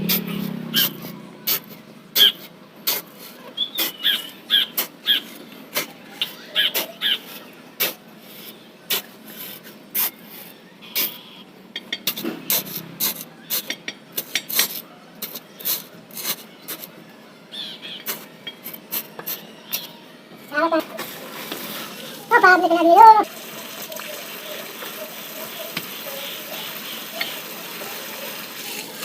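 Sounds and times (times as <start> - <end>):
hand tools scraping mortar: 0.0 - 11.2, 12.0 - 17.0, 18.0 - 20.0.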